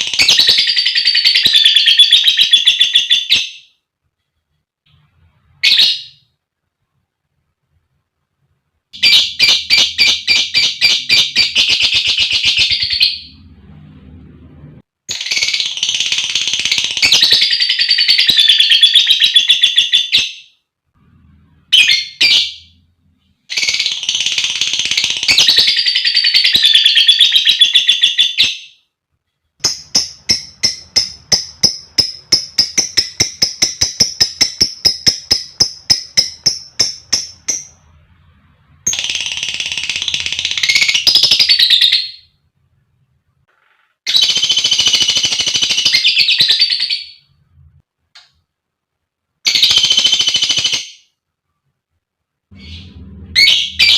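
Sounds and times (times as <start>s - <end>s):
lovebird chattering: 29.6s - 37.8s
bird trilling: 52.5s - 53.9s.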